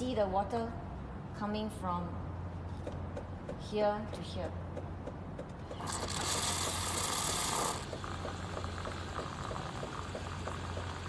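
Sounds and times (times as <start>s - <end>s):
pump humming with rapid ticking: 4.8s - 11.0s
loud hiss of water: 5.8s - 8.1s.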